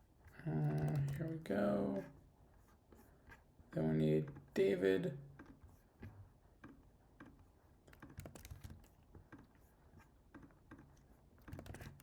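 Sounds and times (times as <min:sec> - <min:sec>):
keyboard typing: 0:00.6 - 0:01.4, 0:08.0 - 0:08.8, 0:11.4 - 0:12.0.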